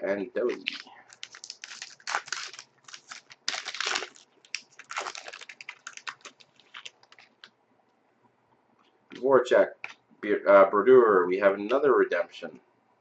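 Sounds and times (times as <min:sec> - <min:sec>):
card pack wrapper crinkling: 0:00.4 - 0:07.5.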